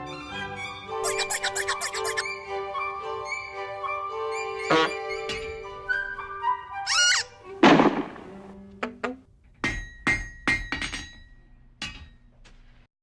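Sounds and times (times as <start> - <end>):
loud crash: 7.6 - 8.5
sharp knocks: 7.6 - 9.0.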